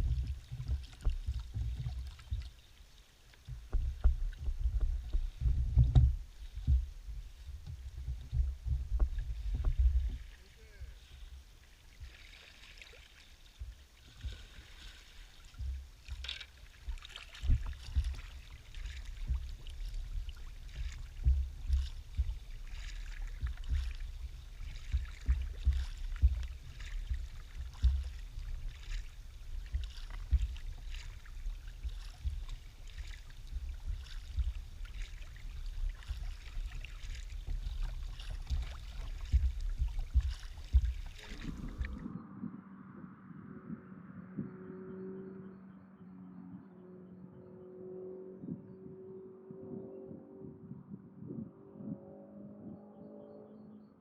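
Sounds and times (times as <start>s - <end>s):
low rumble: 0.0s - 2.6s, 3.5s - 12.2s, 13.5s - 54.0s
paddle splashing in water: 0.0s - 42.1s.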